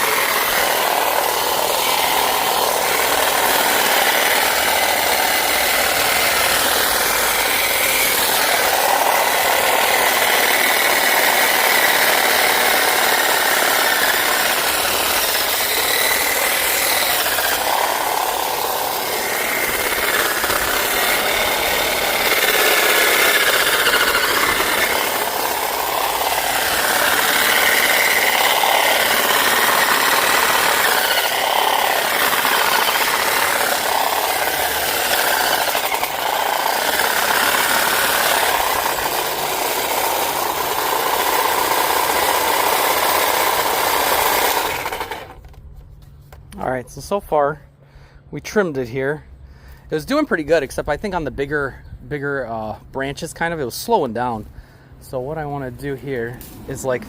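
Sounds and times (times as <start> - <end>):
electric hedge trimmer cutting: 0.0 - 45.6.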